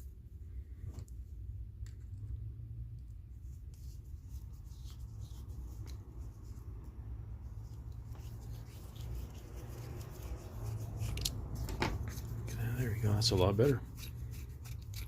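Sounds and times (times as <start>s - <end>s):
steady low hum: 0.0s - 15.0s
wrench scraping and clicking: 11.0s - 12.6s, 13.8s - 15.0s.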